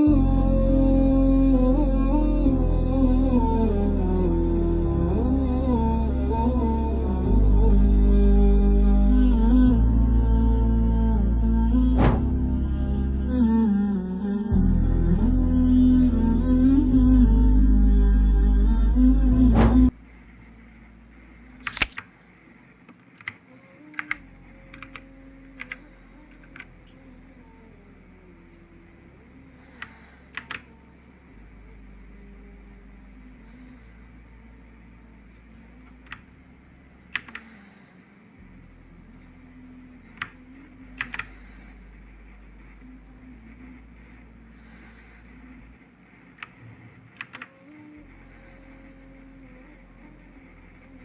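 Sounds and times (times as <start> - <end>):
music: 0.0 - 19.9
mechanical keyboard key clicks: 21.6 - 22.1, 24.0 - 25.0, 30.4 - 30.6, 37.2 - 37.4, 41.0 - 41.3, 47.2 - 47.5.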